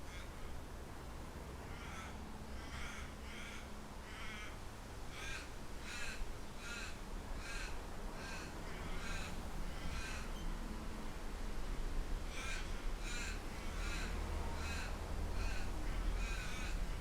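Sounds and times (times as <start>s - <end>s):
low wind rumble: 0.3s - 17.0s
bird calling: 12.4s - 17.0s.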